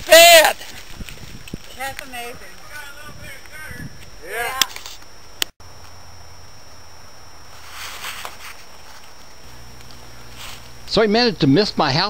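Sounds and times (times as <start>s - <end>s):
voices reacting: 0.0s - 0.8s, 1.7s - 5.0s
steady low hum: 0.6s - 12.0s.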